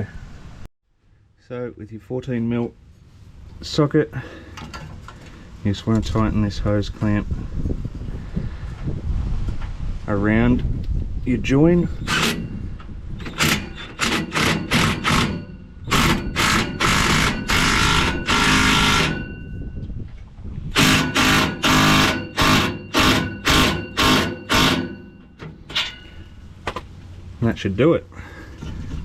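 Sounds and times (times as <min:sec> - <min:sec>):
power tool tightening clamp: 0:12.0 - 0:12.5, 0:13.2 - 0:19.2, 0:20.8 - 0:25.1.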